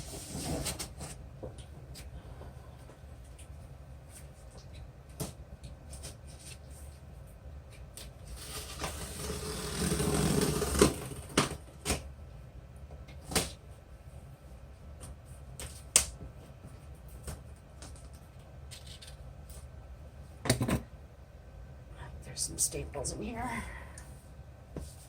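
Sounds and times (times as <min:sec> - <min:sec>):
cardboard scraping and rustling: 0:00.0 - 0:01.2.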